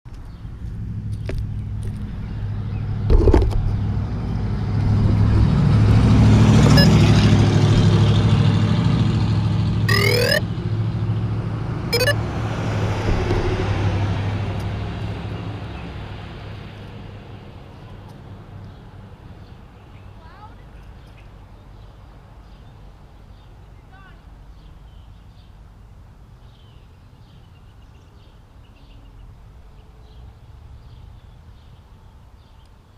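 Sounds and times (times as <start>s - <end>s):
short fast high chirps: 9.9s - 10.4s, 12.0s - 12.2s
sharp knock: 13.0s - 13.9s.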